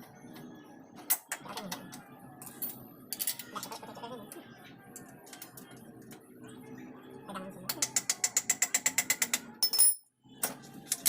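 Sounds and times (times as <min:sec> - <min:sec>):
metal tools clinking: 0:09.6 - 0:10.1.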